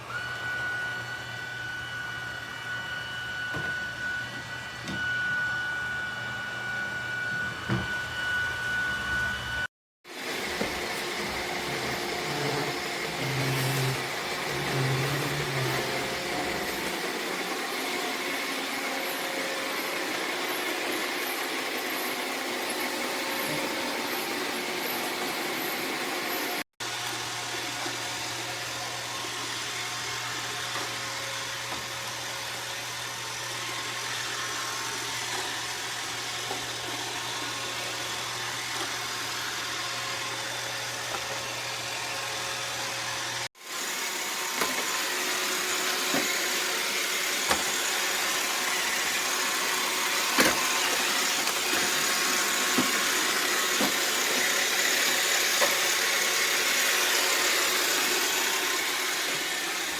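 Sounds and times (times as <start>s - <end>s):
robot vacuum whirring: 27.0s - 59.9s.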